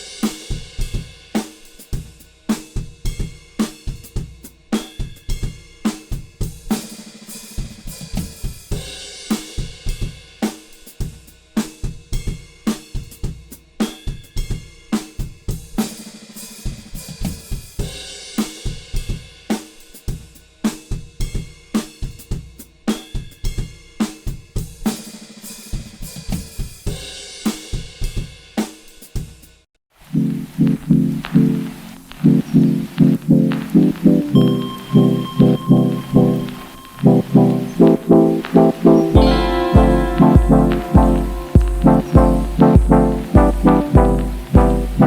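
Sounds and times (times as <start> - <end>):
drum kit beat: 0.0 - 29.5, 30.1 - 45.0.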